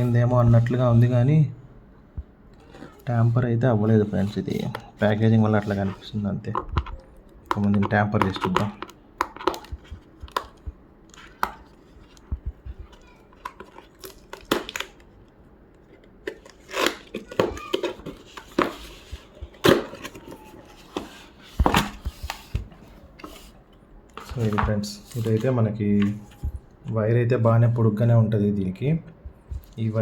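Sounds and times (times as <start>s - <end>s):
packaging rustling: 6.8s - 26.6s.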